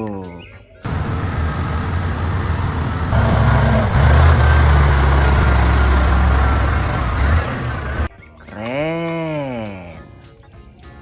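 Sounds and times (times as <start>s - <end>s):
truck engine rumbling: 0.9s - 8.1s.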